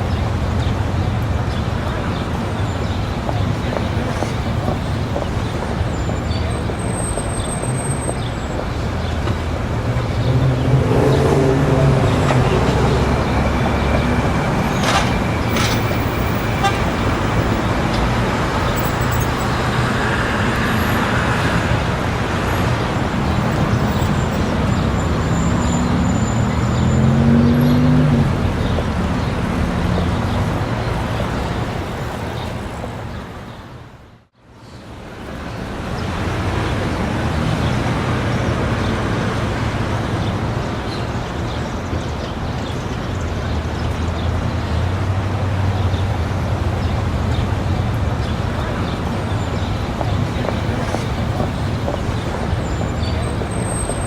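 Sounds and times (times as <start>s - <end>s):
traffic noise: 0.0s - 54.0s
vehicles passing: 0.0s - 54.0s
crowd chatter: 1.1s - 24.6s, 48.4s - 54.0s
car horn tooting: 16.5s - 17.5s.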